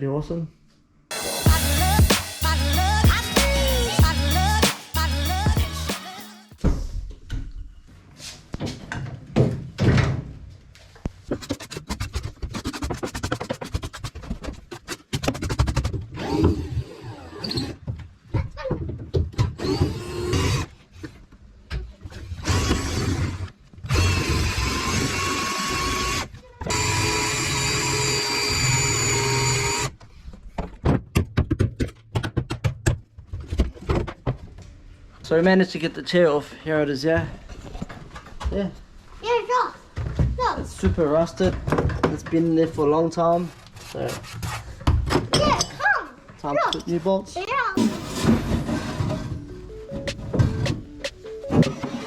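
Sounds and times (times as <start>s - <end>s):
handheld power tool running: 1.1s - 5.9s, 47.8s - 49.2s.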